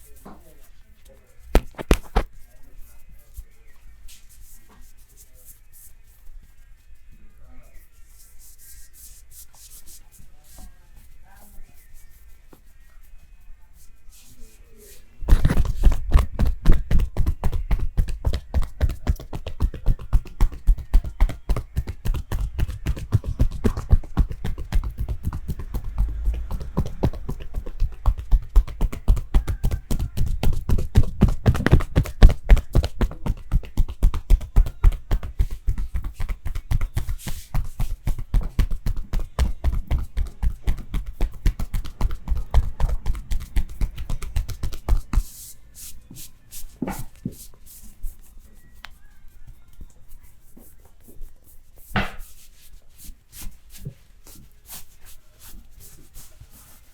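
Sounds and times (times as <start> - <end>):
soft rubbing: 0.0 - 56.9
hands slapping on body: 1.5 - 2.4, 15.3 - 45.3
light taps: 1.6 - 2.3.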